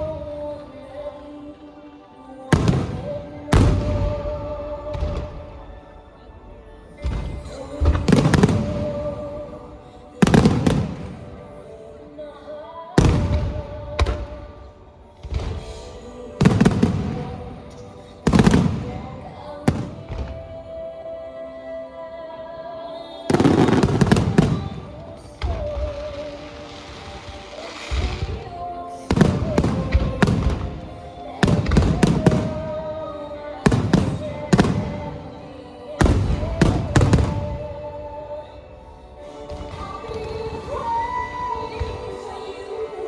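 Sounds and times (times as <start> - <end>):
music playing: 0.0 - 43.0
crackling bangs: 2.5 - 4.3, 15.2 - 19.1, 19.7 - 20.4, 23.3 - 37.9
fireworks bursting: 2.5 - 5.6, 7.0 - 11.5, 15.2 - 20.6, 23.3 - 38.2.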